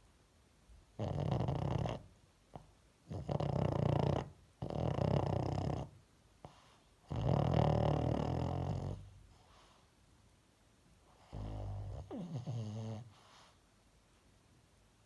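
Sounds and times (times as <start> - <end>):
dog snoring: 1.0 - 9.8, 11.1 - 13.6.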